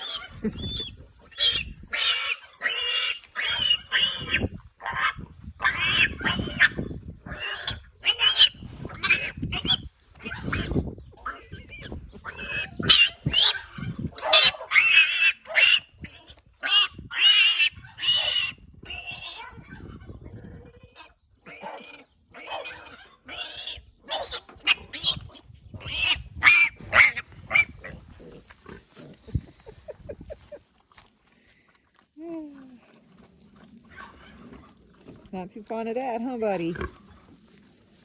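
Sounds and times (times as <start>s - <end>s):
piglet squealing: 0.0s - 20.0s, 20.6s - 28.4s.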